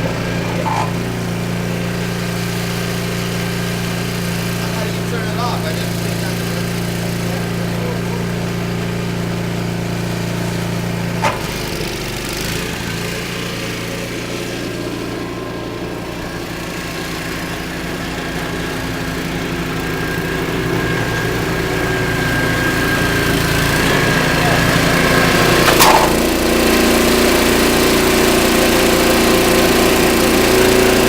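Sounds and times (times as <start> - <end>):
snowblower engine running: 0.0 - 31.0
sharp click: 25.6 - 26.2.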